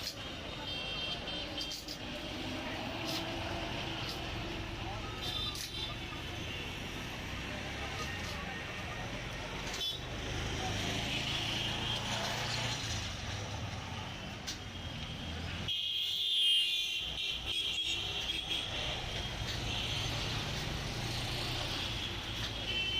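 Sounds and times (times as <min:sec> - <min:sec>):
traffic rumble: 0:00.0 - 0:15.7, 0:16.9 - 0:22.9
traffic hiss: 0:01.2 - 0:09.8, 0:18.9 - 0:22.9.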